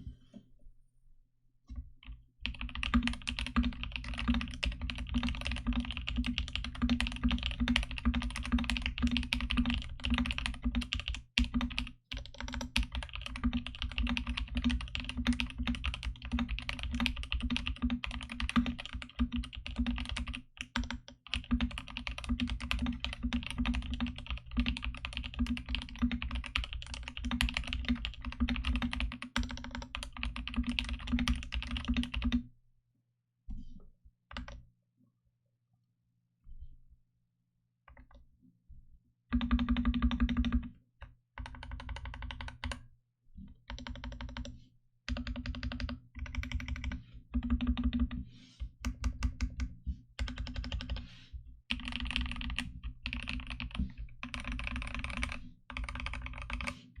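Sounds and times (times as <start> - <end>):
mechanical keyboard typing: 2.4 - 32.4, 39.4 - 40.7, 41.4 - 42.8, 43.7 - 44.5, 45.1 - 48.2, 48.9 - 51.1, 51.7 - 56.8.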